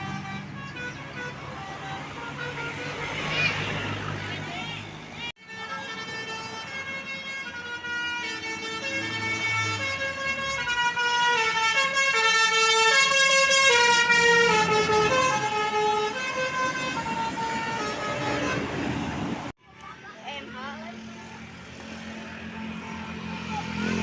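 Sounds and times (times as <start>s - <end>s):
bus horn playing a melody: 0.0s - 4.4s, 5.2s - 19.5s.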